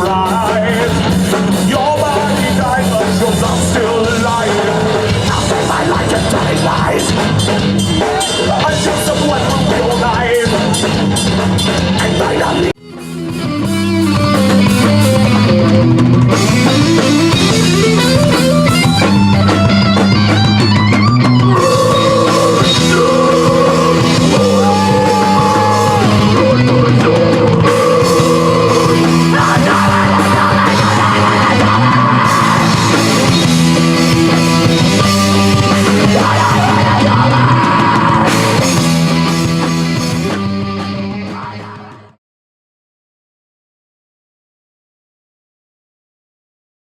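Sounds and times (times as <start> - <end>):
heavy metal music: 0.0 - 42.2
shouted vocals: 21.5 - 32.7, 35.9 - 38.4.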